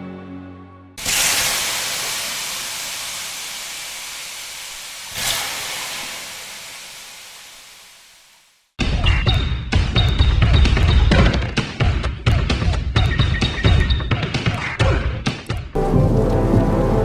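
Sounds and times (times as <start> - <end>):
loud hissing rush: 1.0 - 8.2.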